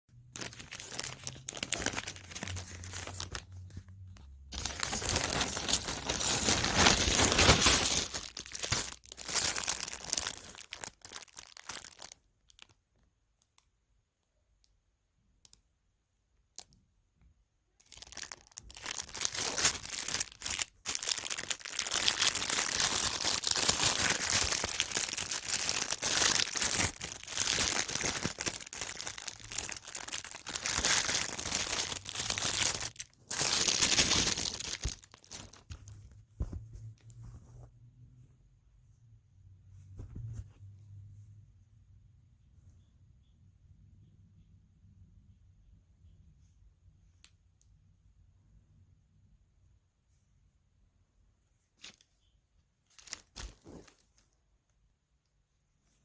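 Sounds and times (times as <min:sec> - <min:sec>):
packaging tearing and crinkling: 0:00.4 - 0:03.6, 0:04.5 - 0:12.2, 0:17.8 - 0:36.0.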